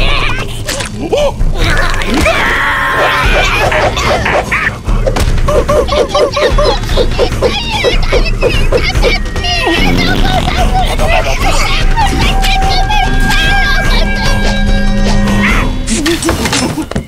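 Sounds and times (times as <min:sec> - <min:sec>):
cartoon music: 0:01.6 - 0:04.8, 0:05.4 - 0:15.7.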